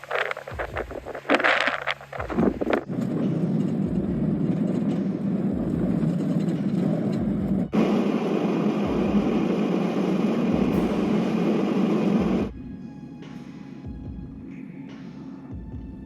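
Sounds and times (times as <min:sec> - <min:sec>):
car rumbling through snow: 0:00.0 - 0:12.5.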